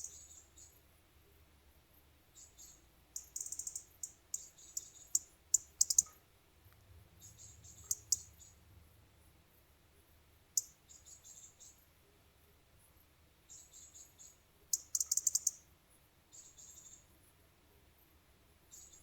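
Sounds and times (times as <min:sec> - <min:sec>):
small animal clicking and chirping: 0:03.2 - 0:08.5, 0:14.7 - 0:15.6.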